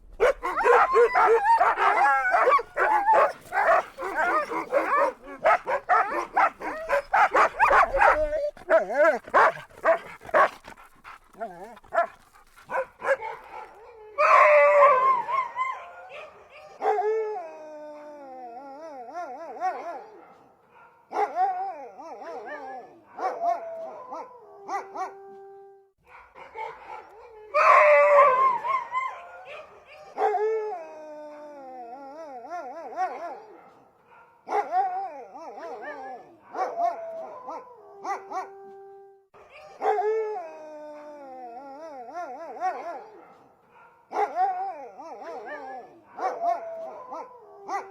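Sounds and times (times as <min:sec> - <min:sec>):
dogs howling: 0:00.1 - 0:20.5, 0:21.2 - 0:25.7, 0:26.5 - 0:33.8, 0:34.5 - 0:47.9.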